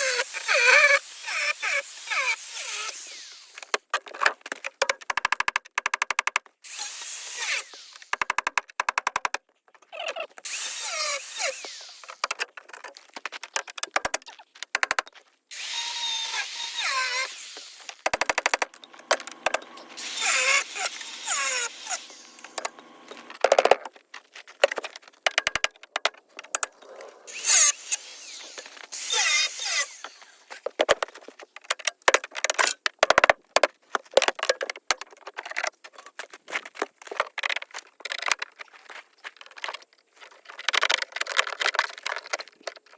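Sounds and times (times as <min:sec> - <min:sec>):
power drill running in bursts: 0:00.0 - 0:03.6, 0:06.7 - 0:08.1, 0:10.5 - 0:12.2, 0:15.5 - 0:18.1, 0:18.8 - 0:23.4, 0:27.3 - 0:30.4
clicks and knocks: 0:22.4 - 0:27.1.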